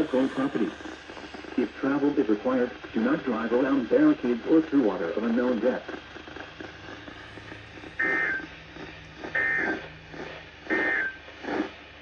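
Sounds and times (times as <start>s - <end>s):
faint radio hiss: 0.0s - 11.7s
digital data tone bursts: 7.8s - 8.6s, 9.2s - 11.3s.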